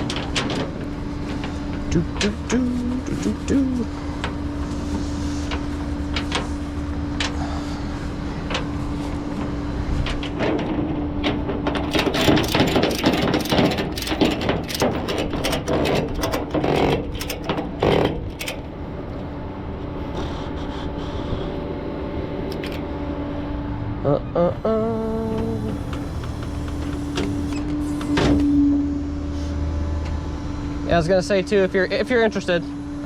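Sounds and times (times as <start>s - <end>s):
truck idling hum: 0.0s - 28.0s
rapid metallic clicking: 10.1s - 18.7s.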